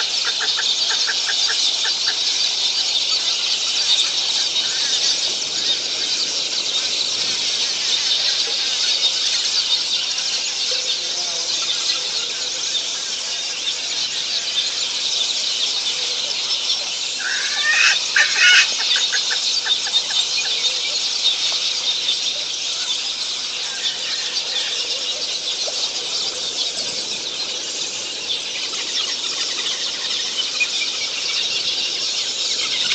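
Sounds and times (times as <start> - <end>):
loud bird call: 0.0 - 2.7, 15.9 - 32.9.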